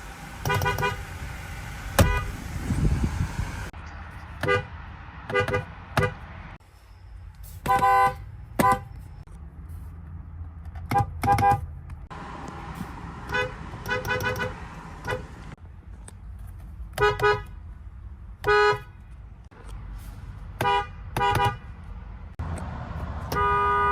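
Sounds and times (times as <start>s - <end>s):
car horns tooting: 0.4s - 1.2s, 1.9s - 2.9s, 4.4s - 4.7s, 5.3s - 6.2s, 7.6s - 9.0s, 10.8s - 11.7s, 13.2s - 15.6s, 17.0s - 17.6s, 18.4s - 19.0s, 20.6s - 21.8s, 23.2s - 23.9s.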